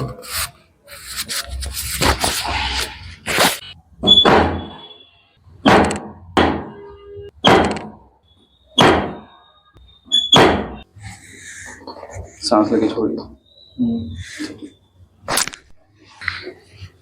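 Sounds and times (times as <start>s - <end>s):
sharp thuds on a back: 7.4s - 8.0s, 8.8s - 9.2s, 10.3s - 10.8s.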